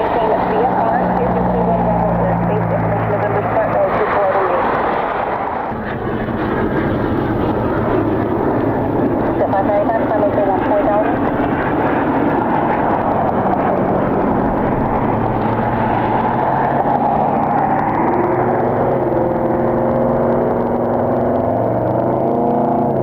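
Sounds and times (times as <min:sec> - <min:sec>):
jet engines roaring: 0:00.0 - 0:23.0.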